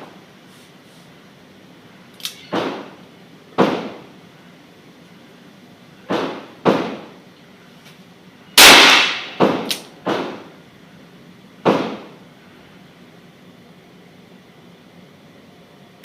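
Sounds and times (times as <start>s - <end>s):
handgun shots: 8.6s - 10.4s.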